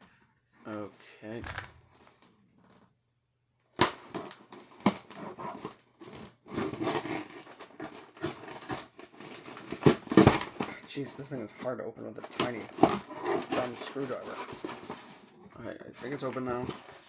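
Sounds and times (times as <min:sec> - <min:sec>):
cardboard crackling: 0:04.2 - 0:11.4, 0:12.0 - 0:15.4, 0:16.0 - 0:17.0.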